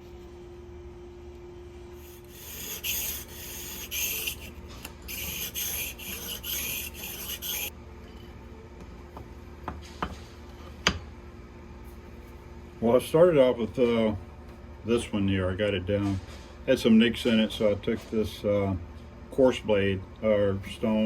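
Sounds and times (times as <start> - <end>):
blade rasping on sharpening stone: 2.0 - 7.7.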